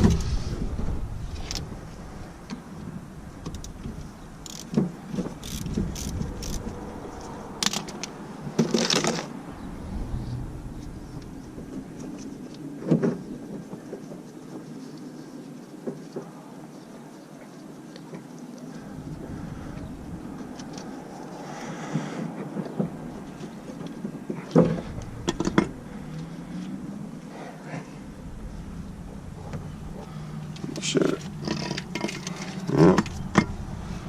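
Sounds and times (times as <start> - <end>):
low background noise: 0.0 - 34.0.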